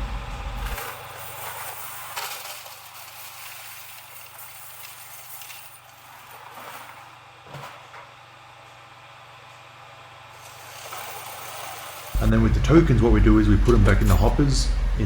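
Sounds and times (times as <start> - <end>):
coin counting machine humming: 0.0 - 7.3, 10.3 - 15.0
coins clinking: 0.6 - 7.1, 10.4 - 14.9.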